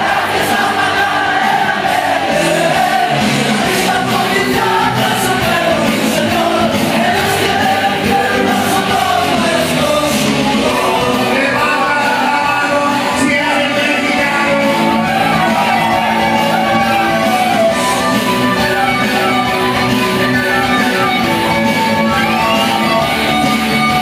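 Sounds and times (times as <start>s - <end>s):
live band music: 0.0s - 24.0s
person singing: 0.0s - 24.0s.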